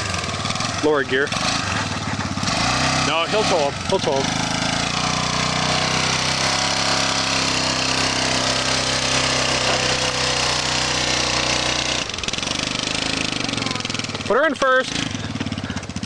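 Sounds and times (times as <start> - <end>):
atv engine running under load: 0.0 - 16.0.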